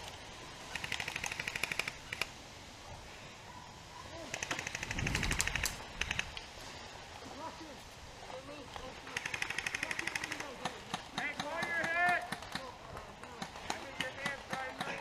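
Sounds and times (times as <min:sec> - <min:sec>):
airsoft guns firing full auto: 0:00.7 - 0:02.3, 0:04.4 - 0:06.3, 0:09.1 - 0:12.7.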